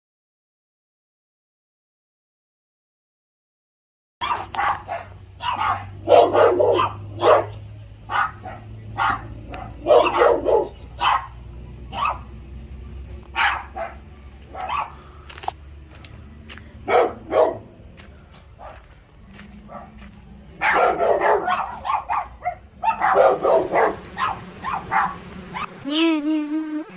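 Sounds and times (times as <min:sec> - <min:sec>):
dog barking: 0:04.2 - 0:12.4, 0:13.3 - 0:15.0, 0:16.8 - 0:17.8, 0:18.6 - 0:19.0, 0:19.6 - 0:25.8.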